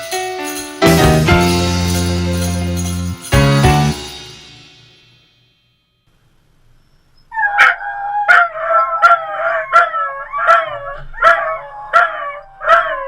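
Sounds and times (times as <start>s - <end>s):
dog howling: 7.3s - 13.0s.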